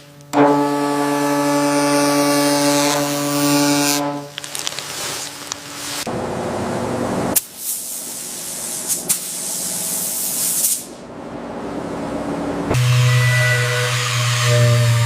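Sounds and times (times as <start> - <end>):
compressed air hissing from nozzle: 7.4 - 11.0.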